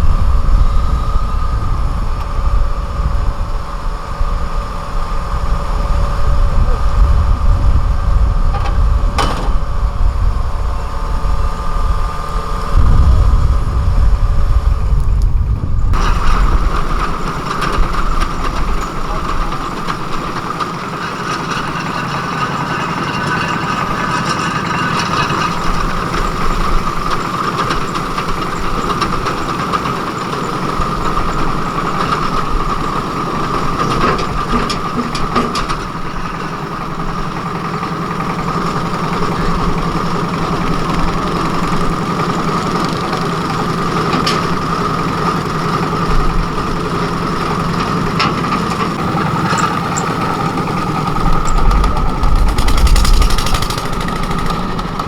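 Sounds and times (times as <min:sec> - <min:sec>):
high whine: 0:00.0 - 0:37.3
heavy engine running: 0:00.0 - 0:55.0.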